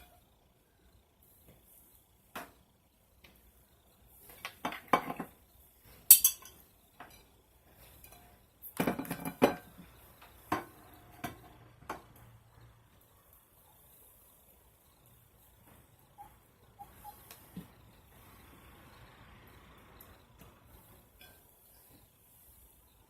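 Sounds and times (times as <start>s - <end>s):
utensils clinking against dishes: 6.1s - 7.3s.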